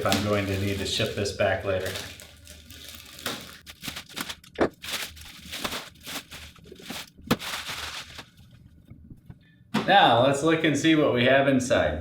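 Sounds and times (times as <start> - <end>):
plastic wrapping crinkling: 0.0 - 8.8.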